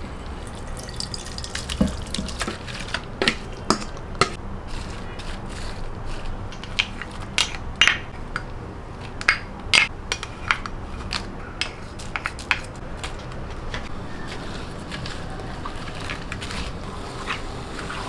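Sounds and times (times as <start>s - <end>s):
steady low hum: 0.0s - 0.8s, 13.8s - 18.0s
kitchen utensils knocking and clinking: 0.0s - 4.4s, 13.8s - 18.0s.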